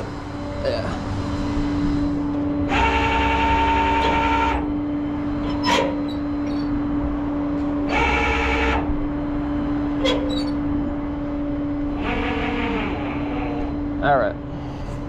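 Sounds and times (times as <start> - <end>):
truck engine hum: 0.0 - 15.0
hydraulic winch whining: 1.0 - 6.8, 7.6 - 9.1, 9.9 - 10.7, 11.8 - 14.0.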